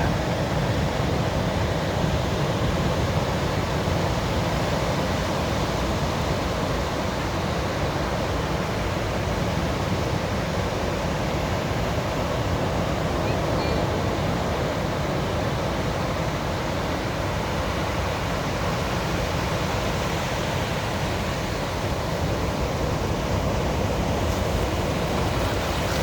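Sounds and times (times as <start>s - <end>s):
sea waves washing onto beach: 10.4s - 26.0s.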